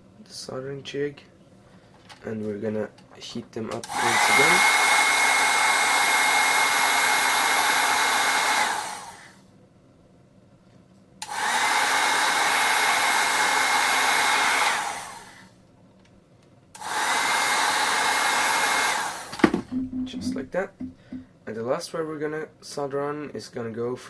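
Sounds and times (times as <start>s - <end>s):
fan winding down whine: 3.8s - 9.3s, 11.2s - 15.4s
heat gun blowing: 3.8s - 9.4s, 11.2s - 15.5s, 16.8s - 19.6s.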